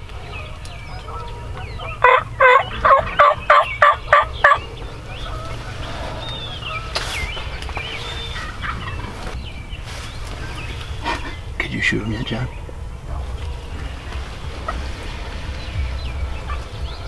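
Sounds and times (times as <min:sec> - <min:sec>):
songbird chirps: 0:00.0 - 0:17.0
turkey yelps: 0:00.0 - 0:17.0.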